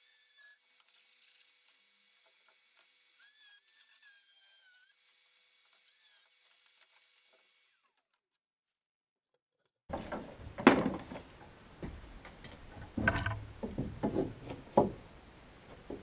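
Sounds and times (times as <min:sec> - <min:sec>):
tools and materials knocking: 0:12.8 - 0:15.0.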